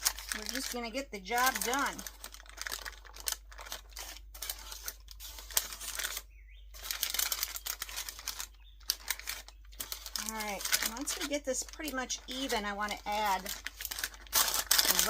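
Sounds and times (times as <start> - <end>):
parchment paper rustling: 0.0 - 15.0
spatula scraping: 3.9 - 7.1.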